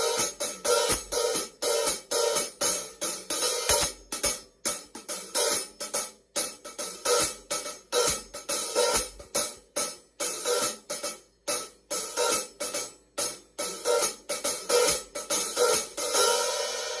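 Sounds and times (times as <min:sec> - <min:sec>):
hi-hats played in rhythm: 0:00.0 - 0:09.6.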